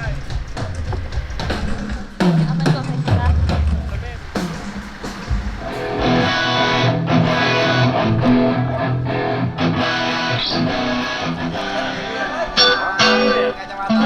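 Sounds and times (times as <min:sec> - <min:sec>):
electric guitar strumming chords: 0:04.4 - 0:14.0.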